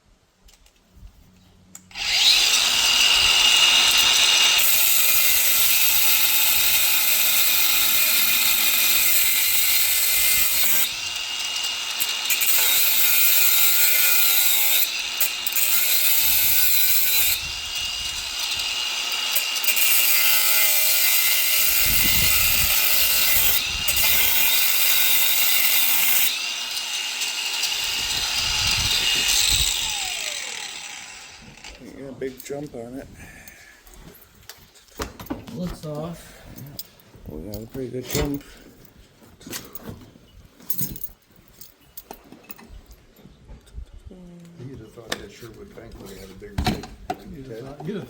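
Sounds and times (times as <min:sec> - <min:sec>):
power tool cutting into metal: 0:01.9 - 0:31.8.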